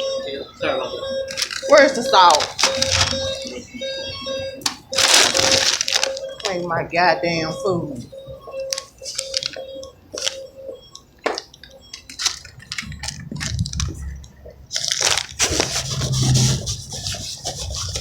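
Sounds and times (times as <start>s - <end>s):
packaging rustling: 1.3s - 3.5s, 4.7s - 6.6s, 8.6s - 10.4s, 11.3s - 18.0s
food crunching: 4.7s - 6.6s, 8.7s - 16.2s.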